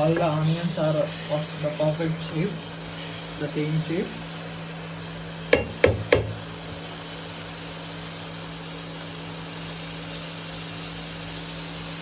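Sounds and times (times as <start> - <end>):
induction cooktop hum: 0.0 - 12.0
ringing knocks: 5.6 - 6.4.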